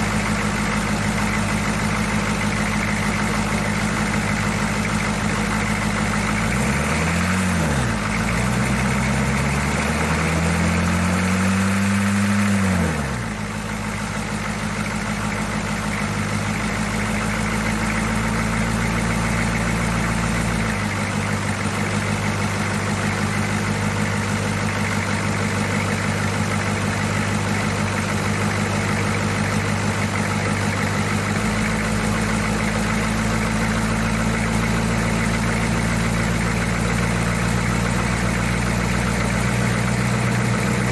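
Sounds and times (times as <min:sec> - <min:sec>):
diesel engine revving and idling: 0:00.0 - 0:40.9.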